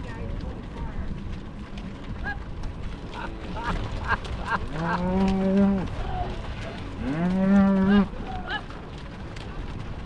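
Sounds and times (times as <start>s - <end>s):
cattle mooing: 4.6s - 8.5s.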